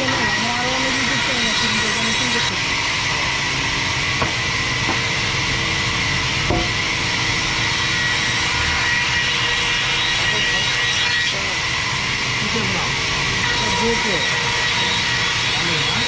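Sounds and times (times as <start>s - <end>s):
band saw whining: 0.0s - 16.0s
machine noise: 0.0s - 16.0s
sharp knocks: 4.2s - 5.0s, 6.5s - 6.8s.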